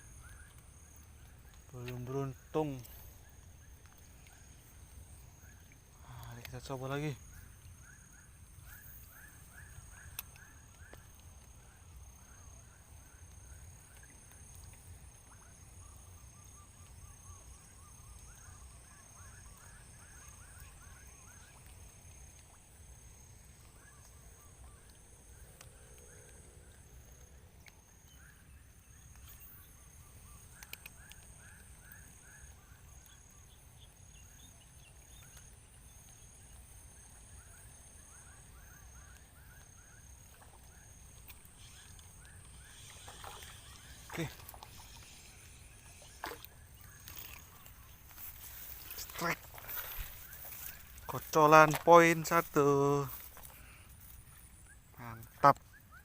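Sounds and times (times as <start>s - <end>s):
high insect hum: 0.0s - 56.0s
rapidly repeated animal calls: 37.4s - 52.5s.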